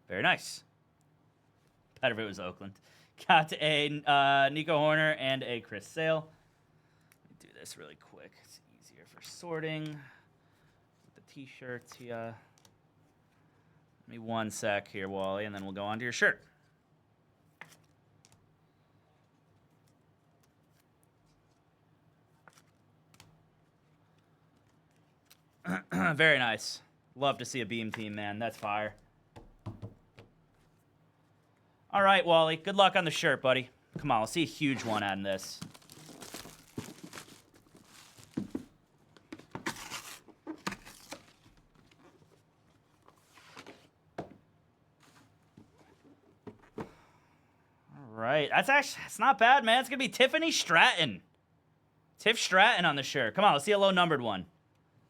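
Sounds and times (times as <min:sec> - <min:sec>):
plastic wrapping crinkling and tearing: 0:34.7 - 0:38.7, 0:39.6 - 0:41.4.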